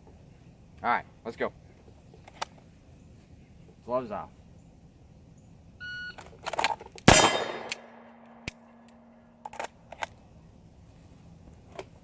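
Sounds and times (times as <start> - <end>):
gun handling clicks: 2.2 - 2.6, 6.2 - 10.2
pistol shot: 7.1 - 8.6.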